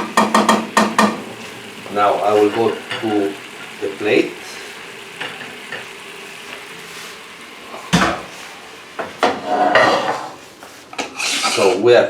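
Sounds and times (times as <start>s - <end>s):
pan knocking: 0.0s - 11.7s
scraping and clinking on a plate: 9.2s - 11.8s.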